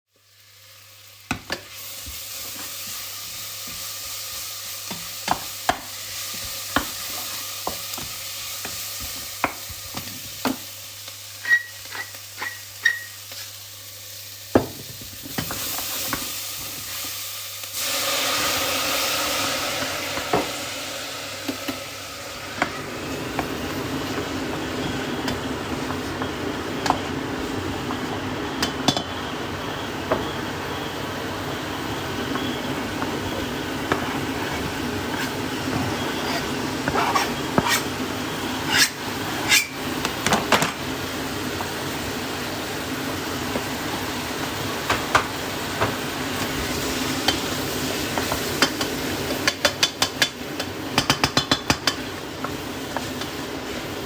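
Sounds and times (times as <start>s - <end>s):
food sizzling in a pan: 0.1s - 54.0s
knife chopping on cutting board: 36.2s - 37.9s.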